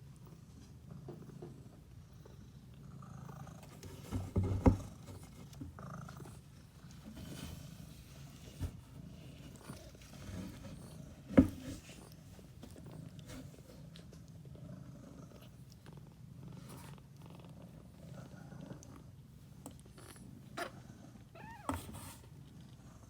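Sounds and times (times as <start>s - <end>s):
kitten purring: 0.1s - 23.0s.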